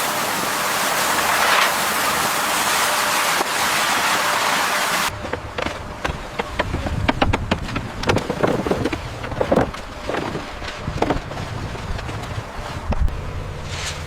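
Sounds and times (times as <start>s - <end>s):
low rumble of machinery: 0.0s - 14.0s
knocks and clanks: 5.1s - 13.1s.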